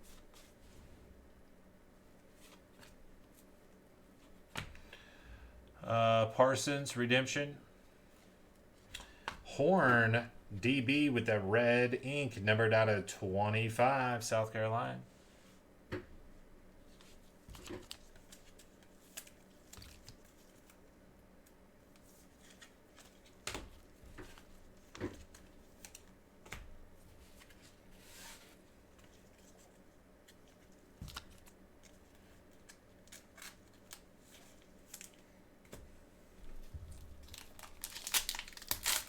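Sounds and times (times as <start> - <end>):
cards sliding rustle: 21.9 - 35.8.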